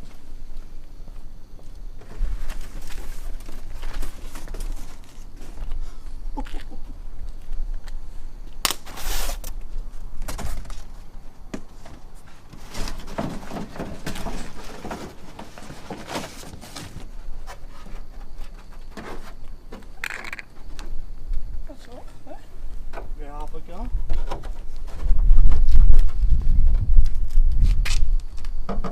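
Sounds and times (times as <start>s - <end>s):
packaging rustling and scraping: 11.9s - 19.4s.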